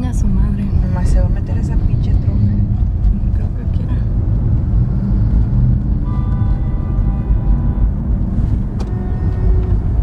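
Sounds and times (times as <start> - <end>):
road noise rumble inside car: 0.0 - 10.0
car horn blast: 6.0 - 10.0.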